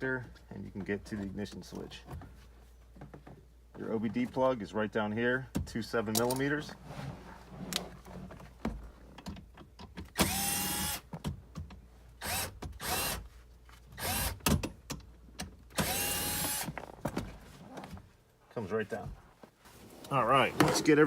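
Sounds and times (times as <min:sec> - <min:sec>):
cordless drill whining: 0:10.2 - 0:11.0, 0:12.2 - 0:13.2, 0:14.0 - 0:14.4, 0:15.8 - 0:16.7.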